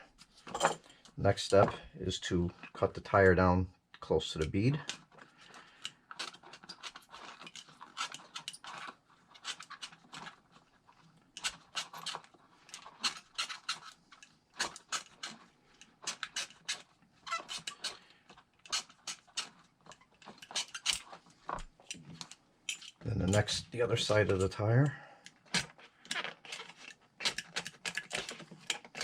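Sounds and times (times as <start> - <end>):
razor blade rasping through rubber: 11.4 - 14.0, 14.6 - 21.2.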